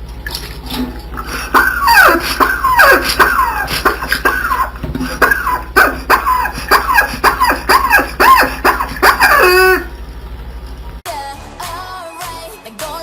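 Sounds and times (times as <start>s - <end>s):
music: 11.1s - 13.0s.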